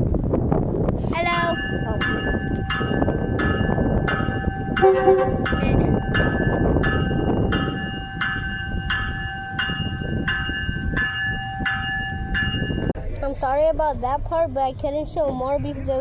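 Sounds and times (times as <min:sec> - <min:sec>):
train rumble: 0:00.0 - 0:16.0
bell ringing: 0:01.3 - 0:12.9
train horn toot: 0:04.8 - 0:06.0.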